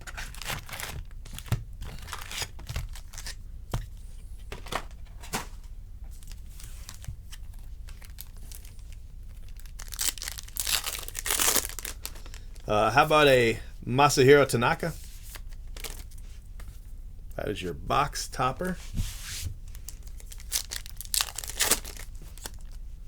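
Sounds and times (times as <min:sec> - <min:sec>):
card packaging tearing and crinkling: 0:00.0 - 0:03.4, 0:06.6 - 0:12.7, 0:14.8 - 0:16.2, 0:19.7 - 0:22.8
rustles and clicks of handling: 0:00.0 - 0:12.7, 0:14.9 - 0:17.4, 0:18.6 - 0:23.0.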